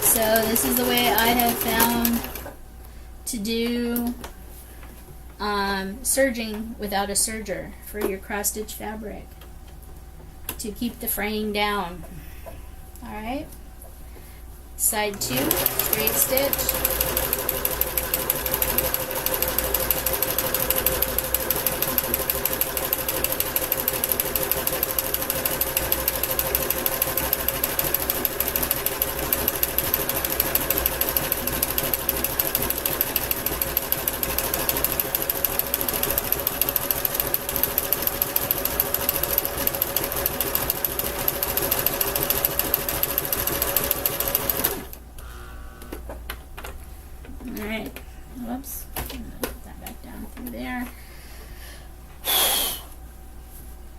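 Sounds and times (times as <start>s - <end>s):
electric sewing machine stitching: 0.0s - 2.5s, 15.1s - 45.0s.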